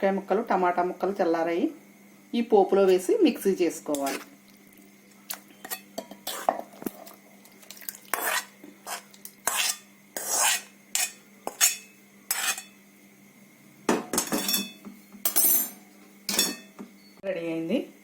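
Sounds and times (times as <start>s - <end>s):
spoon scraping and knocking a pan: 3.9s - 4.3s, 5.5s - 7.1s, 8.1s - 12.8s, 13.9s - 16.8s.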